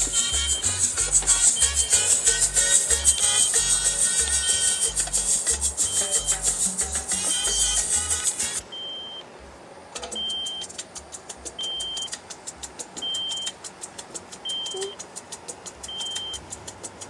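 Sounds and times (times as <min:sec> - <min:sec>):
dashboard warning chime beeping: 0:00.0 - 0:05.0, 0:05.8 - 0:06.4, 0:07.1 - 0:07.8, 0:08.7 - 0:09.3, 0:10.1 - 0:10.7, 0:11.6 - 0:12.2, 0:13.0 - 0:13.6, 0:14.4 - 0:15.0, 0:15.8 - 0:16.5
fast even ticking: 0:00.0 - 0:08.0, 0:10.1 - 0:17.0
music from car stereo: 0:00.0 - 0:08.6.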